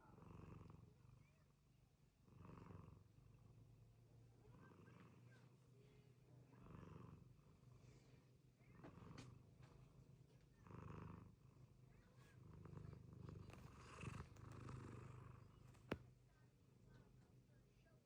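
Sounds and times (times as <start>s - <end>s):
cat snoring softly: 0.0s - 1.3s, 2.2s - 3.8s, 6.4s - 9.6s, 10.5s - 16.0s.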